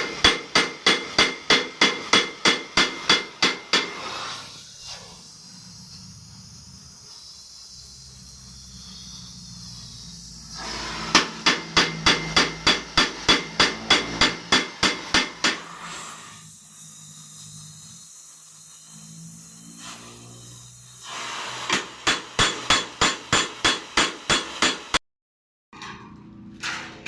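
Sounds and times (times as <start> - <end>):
hammer striking metal: 0.0 - 4.0, 11.0 - 15.9, 21.6 - 25.0.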